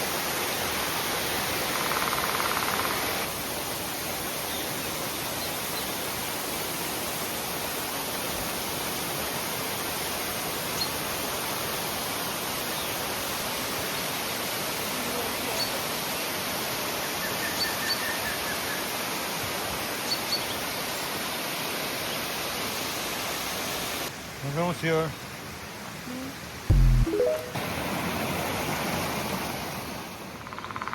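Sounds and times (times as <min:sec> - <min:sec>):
faint high chirps: 0:26.7 - 0:27.6.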